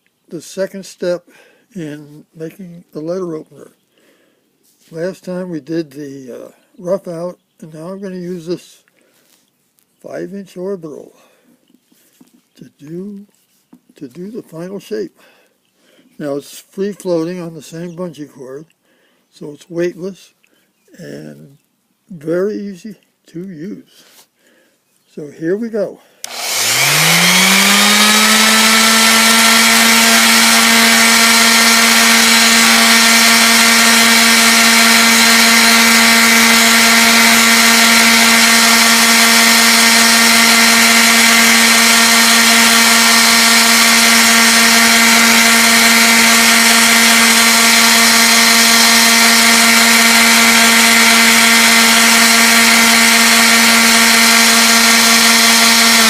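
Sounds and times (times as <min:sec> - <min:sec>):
orbital sander humming: 0:26.2 - 0:56.0.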